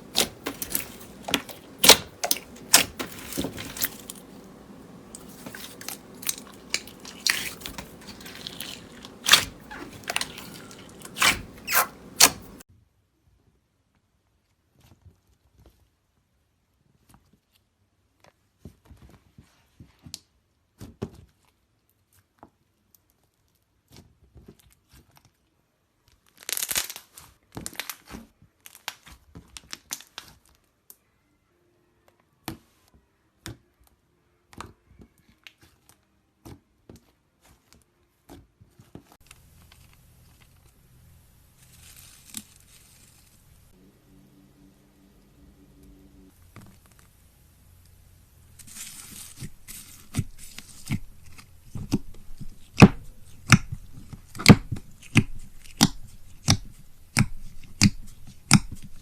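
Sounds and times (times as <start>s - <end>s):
slime crackling and popping: 0.0s - 12.6s, 48.5s - 59.0s
low hum: 42.2s - 52.4s.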